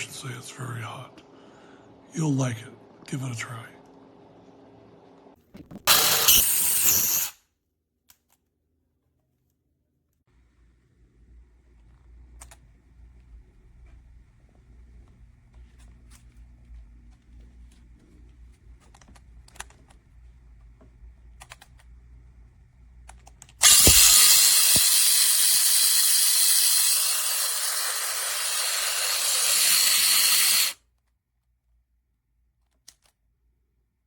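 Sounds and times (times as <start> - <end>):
hair dryer running: 23.6 - 30.8.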